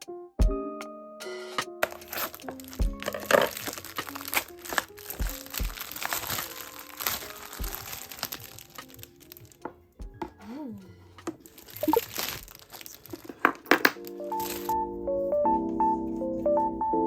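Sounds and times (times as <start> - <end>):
background music with beat: 0.0 - 4.2, 4.8 - 6.1, 6.8 - 12.0
crinkling and rustling: 1.8 - 9.8, 11.1 - 14.8.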